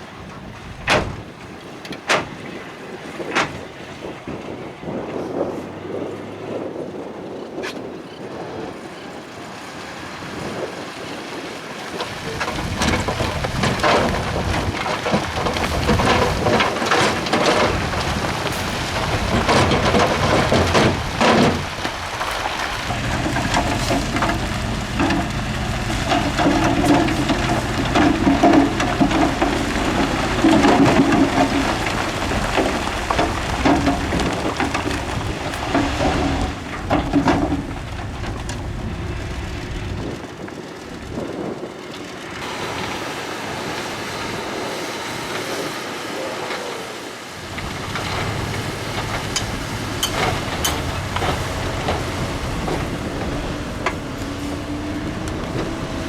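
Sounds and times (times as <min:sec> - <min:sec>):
rock and dirt clattering: 0:11.8 - 0:42.9, 0:47.4 - 0:56.0
diesel engine running: 0:11.9 - 0:56.0.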